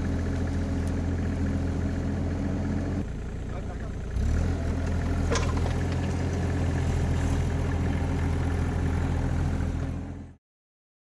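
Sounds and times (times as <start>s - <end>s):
diesel engine idling: 0.0s - 10.4s.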